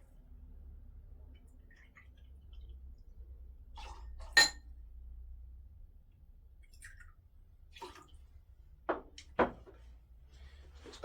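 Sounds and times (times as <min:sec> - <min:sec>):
glass clink: 0:04.4 - 0:04.6
faint knocks and taps: 0:08.9 - 0:09.9.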